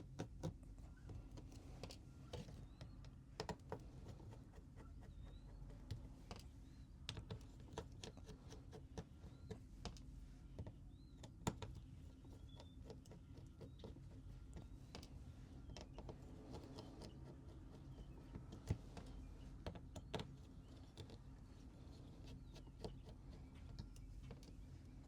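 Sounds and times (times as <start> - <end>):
faint clicks and taps: 0.0 - 25.0.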